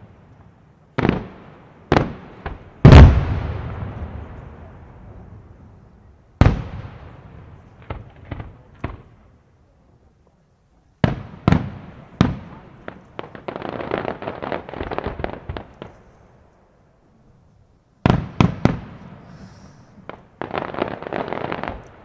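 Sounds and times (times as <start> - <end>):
firework crackling: 11.0 - 16.3, 18.0 - 22.0.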